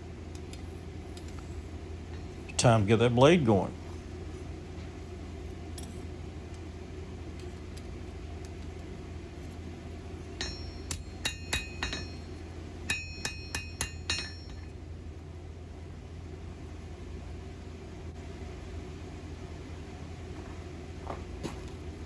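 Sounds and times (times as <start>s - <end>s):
low hum: 0.0s - 22.0s
hammer ringing on anvil: 10.3s - 14.7s.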